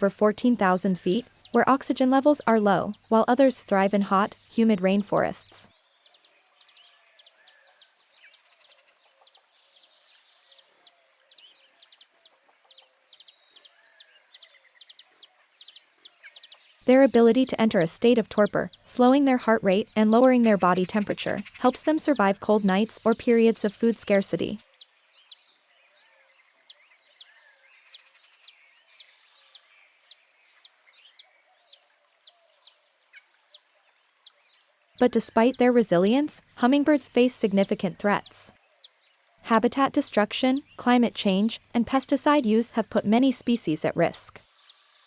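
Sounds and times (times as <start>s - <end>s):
birds chirping: 0.0s - 45.0s
insect trill: 1.0s - 2.3s, 2.9s - 16.6s.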